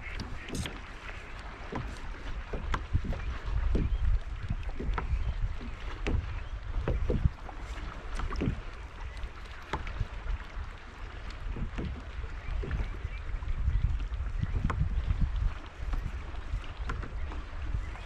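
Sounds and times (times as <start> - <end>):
water lapping at plastic hull: 0.0 - 18.0
wind rumbling on microphone: 0.0 - 18.0
short knocks and clicks: 0.1 - 0.8, 1.7 - 7.4.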